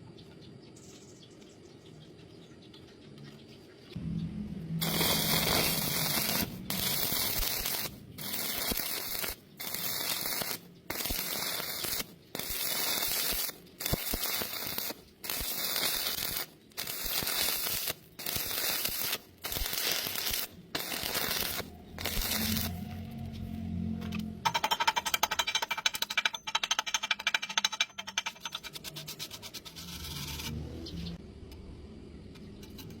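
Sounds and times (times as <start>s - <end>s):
arc welding crackling: 4.8s - 23.7s.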